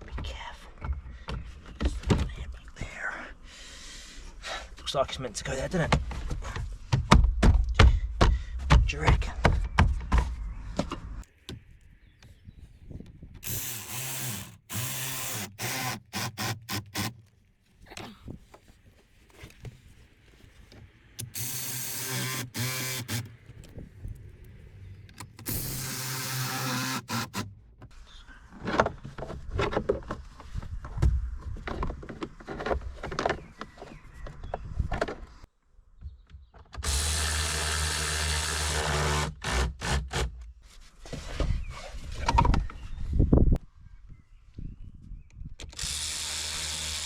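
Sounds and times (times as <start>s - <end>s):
small electric motor running: 13.4s - 17.1s, 21.2s - 23.3s, 25.4s - 27.5s, 36.8s - 39.3s, 45.8s - 47.0s.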